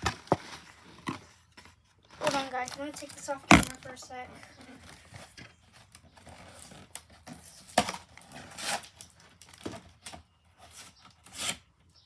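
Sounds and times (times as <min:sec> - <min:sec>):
packaging rustling: 0:02.1 - 0:04.1.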